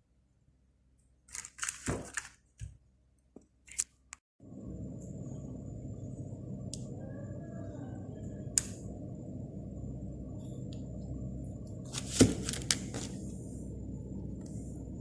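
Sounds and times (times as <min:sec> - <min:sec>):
low room hum: 0:04.4 - 0:15.0.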